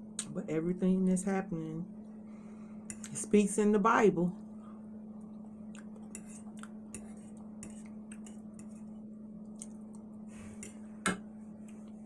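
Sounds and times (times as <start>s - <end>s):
steady low hum: 0.0s - 12.0s
clicks of chewing food: 5.7s - 7.1s, 9.5s - 10.1s.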